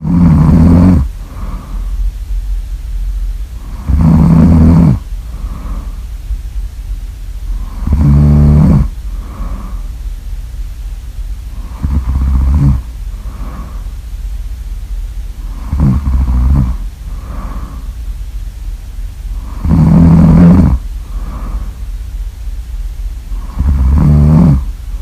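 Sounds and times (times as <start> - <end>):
loud snoring: 0.0 - 1.8, 3.6 - 6.0, 7.5 - 9.8, 11.5 - 13.8, 15.4 - 17.9, 19.3 - 21.8, 23.3 - 24.8
breathy exhales: 0.0 - 2.1, 3.6 - 6.1, 7.5 - 10.0, 12.6 - 14.0, 16.6 - 18.0, 19.4 - 21.9
steady low hum: 0.0 - 25.0.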